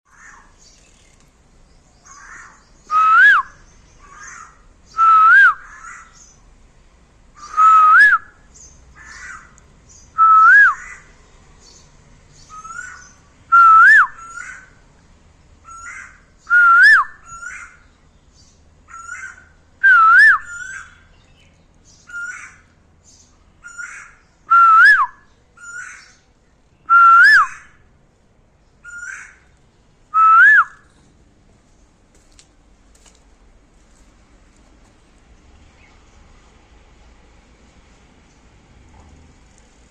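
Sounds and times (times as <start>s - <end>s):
small birds chirping: 0.1s - 24.5s, 25.1s - 39.9s
koel whistled calls: 12.5s - 14.7s, 18.9s - 21.1s, 26.9s - 27.8s, 28.8s - 29.4s.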